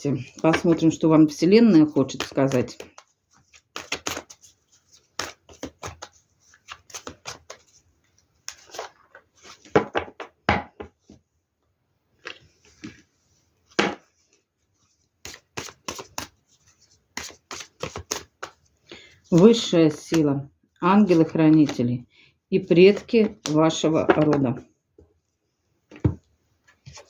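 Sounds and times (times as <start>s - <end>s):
cards shuffling and rustling: 0.2s - 9.9s, 15.2s - 20.2s, 21.0s - 21.8s, 22.9s - 24.5s, 25.9s - 27.0s
cards laid on a table: 2.2s - 7.7s, 15.2s - 16.4s, 17.1s - 18.7s.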